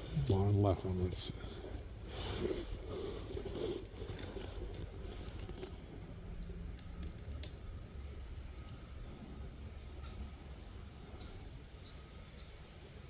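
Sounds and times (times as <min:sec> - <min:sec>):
low outdoor rumble: 0:00.0 - 0:13.0
faint clicks: 0:03.7 - 0:07.6.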